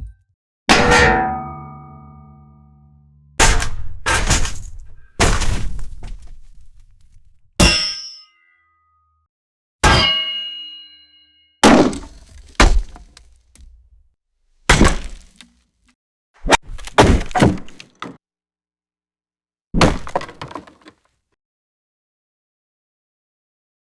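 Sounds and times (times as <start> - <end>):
heavy sharp axe hits: 0.7 - 2.8, 3.4 - 5.9, 7.6 - 8.3, 9.8 - 10.7, 11.6 - 13.2, 14.7 - 15.5, 16.5 - 17.7
ringing metallic clang: 0.7 - 3.8, 7.6 - 8.7, 9.8 - 11.4.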